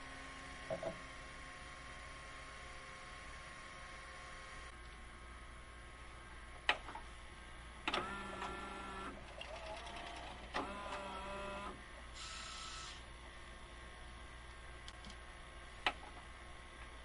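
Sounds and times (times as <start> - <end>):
motor whirring with whine: 7.8 - 13.1.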